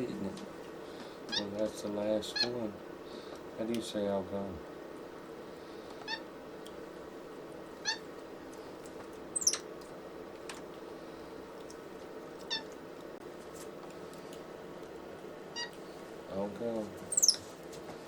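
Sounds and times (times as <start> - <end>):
faint steady hum: 0.0 - 18.0
monkey squeaky chirps: 7.8 - 8.0, 9.4 - 9.6, 17.1 - 17.5
monkey squeal falling in pitch: 9.4 - 9.6, 17.1 - 17.4.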